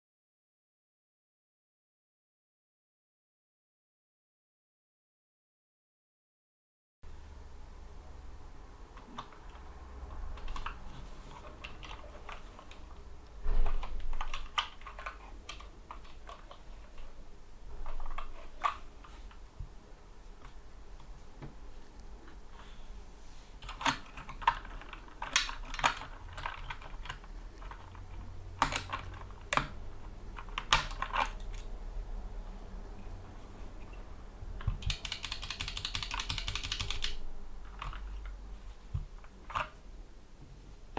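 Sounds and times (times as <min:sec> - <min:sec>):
mechanical keyboard typing: 0:09.0 - 0:13.0, 0:13.6 - 0:17.2, 0:23.6 - 0:31.8, 0:34.6 - 0:38.4.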